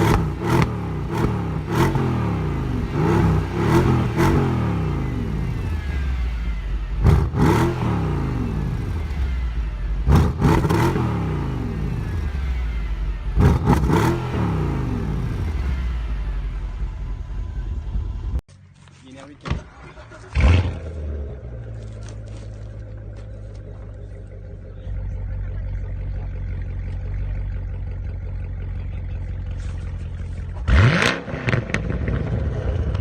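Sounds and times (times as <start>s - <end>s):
car engine revving: 0.0s - 18.4s, 19.9s - 33.0s.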